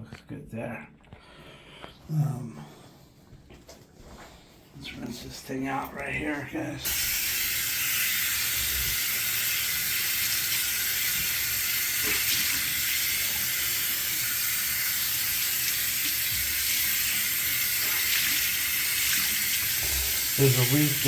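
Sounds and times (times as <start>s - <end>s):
water running from a tap: 6.8s - 21.0s.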